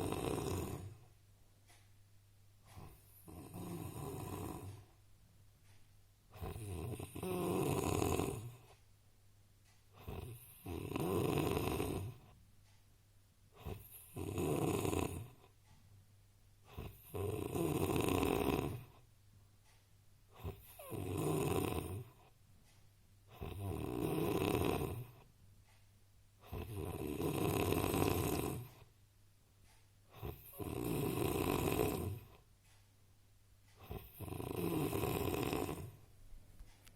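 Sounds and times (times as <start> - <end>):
man snoring heavily: 0.0 - 1.0, 2.8 - 4.8, 6.4 - 8.6, 10.0 - 12.2, 13.6 - 15.4, 16.7 - 18.9, 20.4 - 22.2, 23.3 - 25.2, 26.5 - 28.8, 30.2 - 32.4, 33.8 - 36.0.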